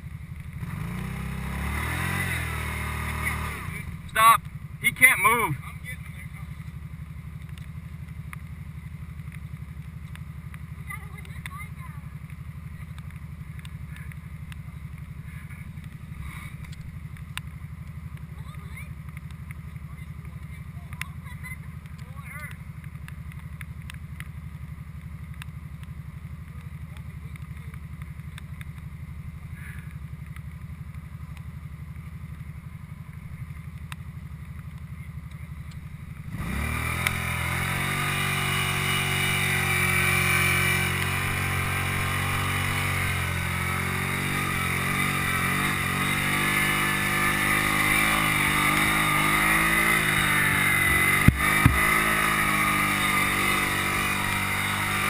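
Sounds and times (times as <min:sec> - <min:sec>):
atv engine idling and revving: 0:00.0 - 0:55.0
sharp knocks: 0:50.9 - 0:52.2.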